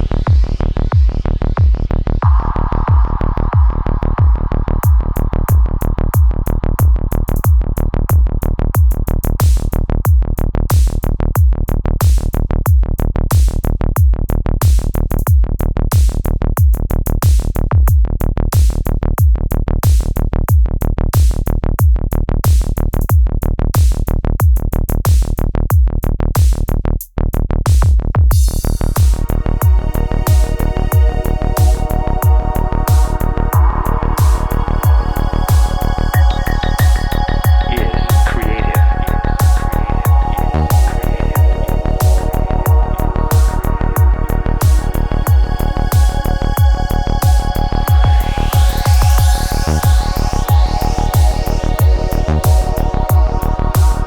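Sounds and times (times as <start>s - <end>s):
drum machine beat: 0.0s - 54.0s
synthesizer chords: 28.4s - 54.0s.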